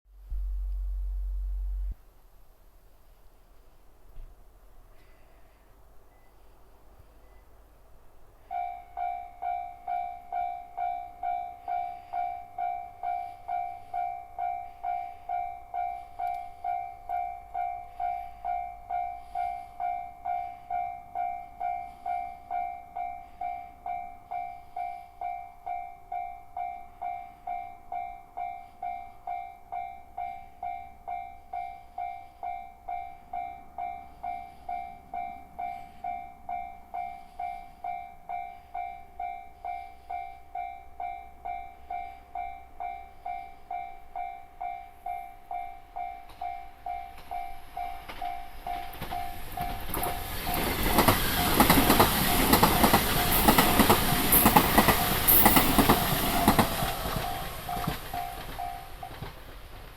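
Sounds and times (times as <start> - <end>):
level crossing warning bell: 8.5 - 59.2
approaching train rushing: 26.5 - 59.9.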